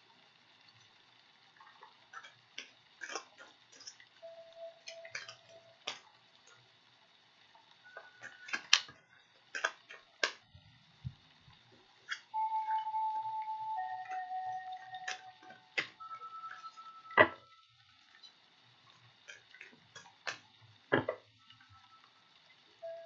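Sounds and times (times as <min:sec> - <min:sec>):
sharp clicks of cards: 0:08.0 - 0:10.4.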